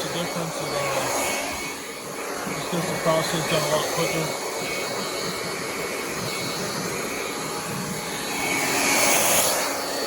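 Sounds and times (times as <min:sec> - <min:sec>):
hot-air blower rushing air: 0:00.0 - 0:10.0.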